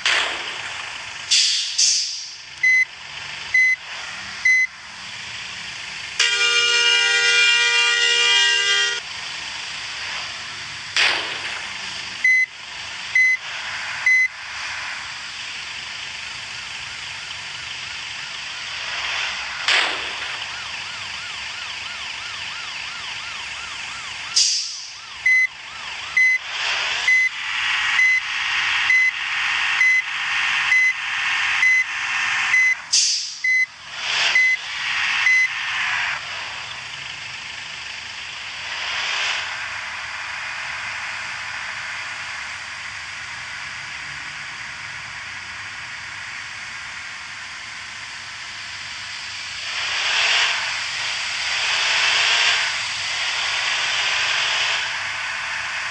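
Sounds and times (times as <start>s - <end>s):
multi-tone musical bus horn: 6.2s - 9.0s.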